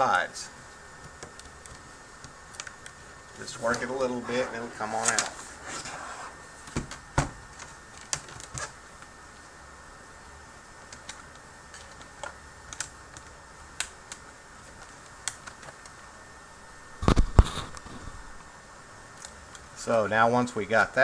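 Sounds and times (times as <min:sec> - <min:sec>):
plastic laptop parts clicking: 0:10.8 - 0:15.9.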